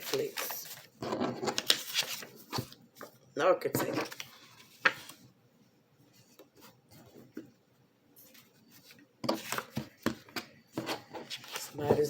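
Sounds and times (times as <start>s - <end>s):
cards rustling and sliding: 0.0s - 3.1s, 8.2s - 12.0s.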